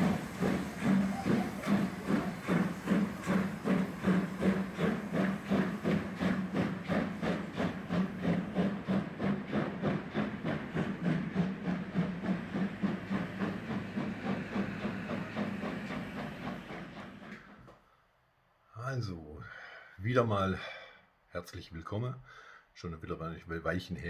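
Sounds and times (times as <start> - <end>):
steam locomotive chuffing: 0.0 - 17.8.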